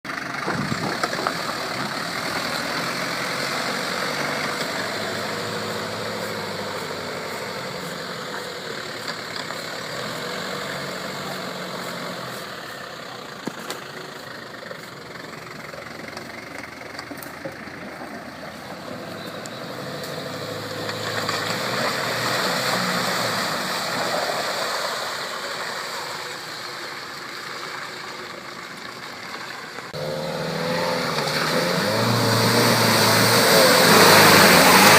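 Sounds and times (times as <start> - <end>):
car engine running: 0.0 - 22.2.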